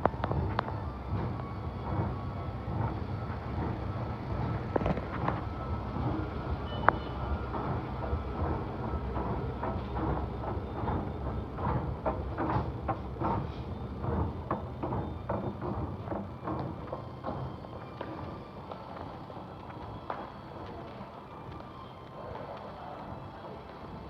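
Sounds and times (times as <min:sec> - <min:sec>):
escalator low rumble: 0:00.0 - 0:18.6.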